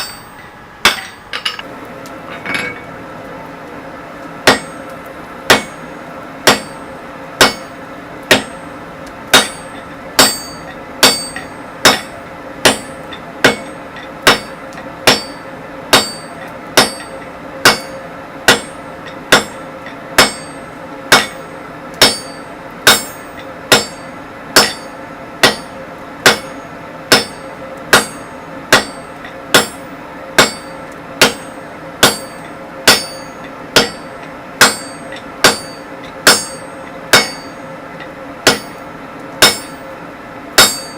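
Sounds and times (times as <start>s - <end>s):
sledgehammer striking steel on anvil: 0.0s - 1.6s, 4.4s - 4.9s, 5.5s - 8.7s, 9.3s - 39.9s, 40.6s - 40.9s.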